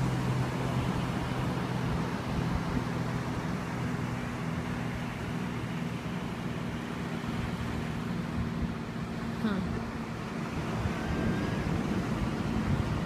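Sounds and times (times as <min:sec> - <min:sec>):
road and wind noise: 0:00.0 - 0:13.0
vehicle engine humming: 0:00.0 - 0:13.0.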